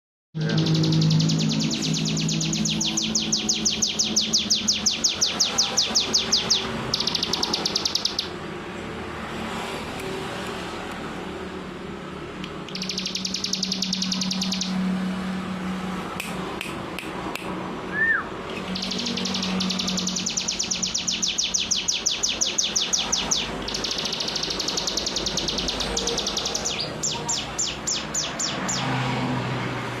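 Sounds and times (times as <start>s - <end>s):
bird singing rapid trills: 0.4s - 8.5s, 12.5s - 15.2s, 18.0s - 29.0s.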